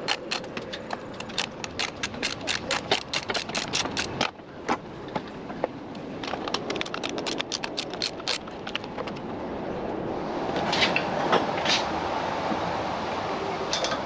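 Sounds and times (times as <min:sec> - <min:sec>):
hand ratchet clicking: 0:00.0 - 0:04.2, 0:06.6 - 0:08.8.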